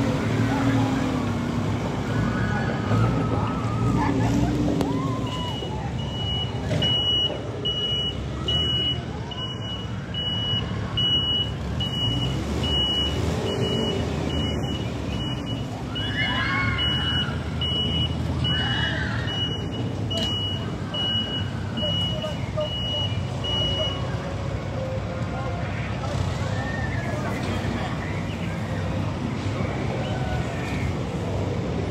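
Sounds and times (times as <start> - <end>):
rumble of site machinery: 0.0 - 31.9
reversing alarm beeping: 5.2 - 24.2.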